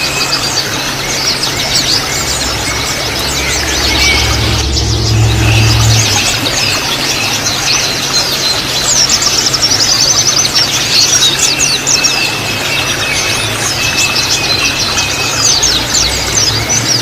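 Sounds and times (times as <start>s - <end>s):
birds twittering: 0.0s - 17.0s
steady low hum: 0.8s - 8.2s.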